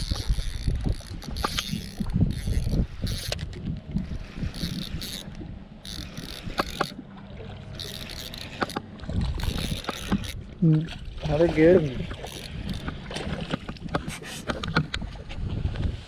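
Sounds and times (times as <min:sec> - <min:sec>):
fishing reel being cranked: 0:00.0 - 0:07.0, 0:07.7 - 0:10.4, 0:11.3 - 0:13.0
mechanical clicks: 0:00.0 - 0:07.0, 0:07.8 - 0:10.4, 0:12.2 - 0:13.0
wind on microphone: 0:00.0 - 0:07.0, 0:07.7 - 0:16.0.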